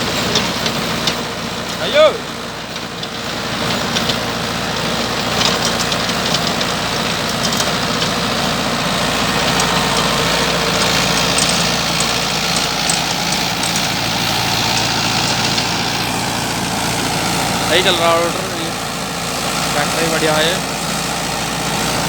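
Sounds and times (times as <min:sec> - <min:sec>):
tractor diesel engine running: 0:00.0 - 0:22.0
light clicks and rattles: 0:05.2 - 0:08.2, 0:09.4 - 0:15.8.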